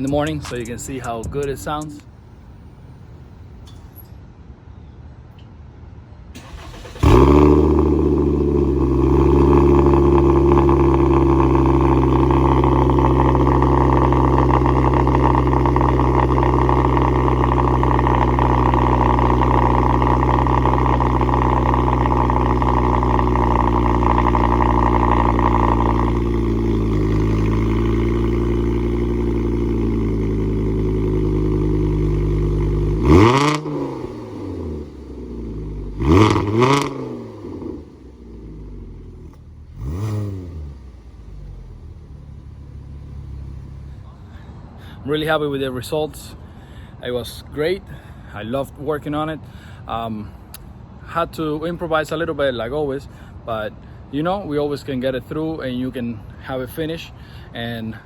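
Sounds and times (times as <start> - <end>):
car engine starting and idling: 0.0 - 4.1, 6.3 - 47.0
engine revving: 6.4 - 44.3.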